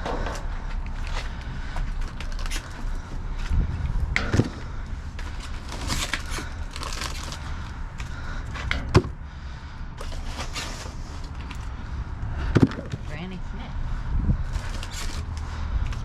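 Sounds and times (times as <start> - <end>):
rustling of bagged produce: 0.0 - 8.6, 10.0 - 11.7, 14.4 - 16.0
low rumble: 0.0 - 16.0.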